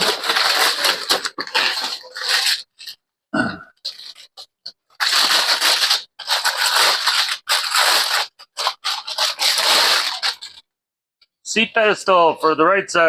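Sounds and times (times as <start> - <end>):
packaging rustling and crinkling: 0.0 - 3.0, 3.8 - 10.6.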